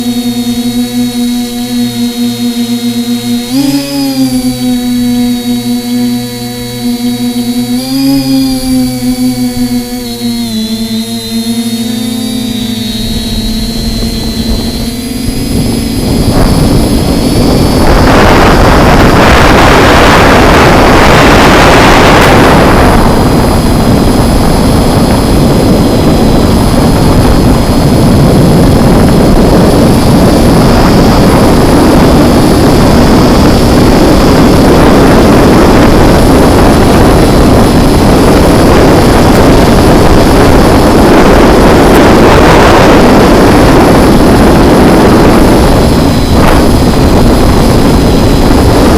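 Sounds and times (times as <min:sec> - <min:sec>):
electric motor high whine: 0:00.0 - 0:48.9
wind buffeting microphone: 0:00.0 - 0:48.9.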